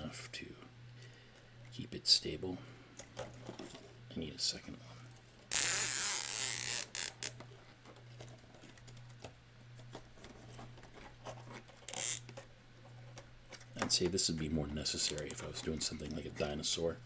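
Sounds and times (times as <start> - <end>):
zip tie rasping zip: 5.5 - 7.3, 11.9 - 12.2
faint handling clicks: 11.8 - 12.5, 15.0 - 16.5.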